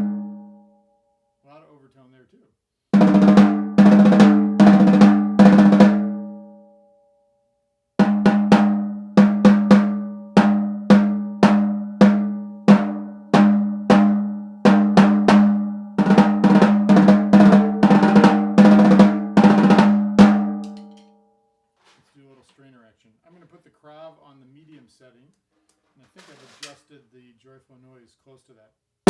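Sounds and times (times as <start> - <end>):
snare drum hits: 8.0 - 21.0.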